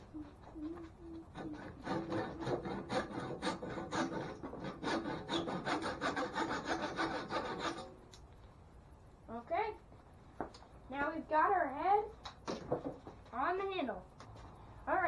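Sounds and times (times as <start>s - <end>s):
handsaw cutting wood: 1.3s - 7.9s.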